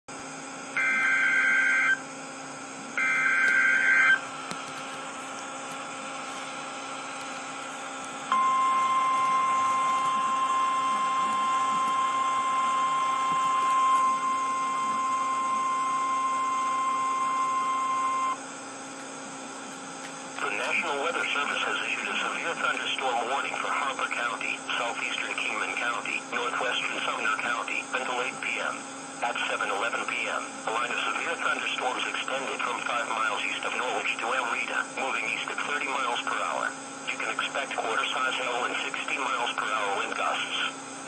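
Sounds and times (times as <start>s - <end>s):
steady warning alarm tone: 0.4s - 19.6s
faint radio hiss: 20.4s - 40.8s.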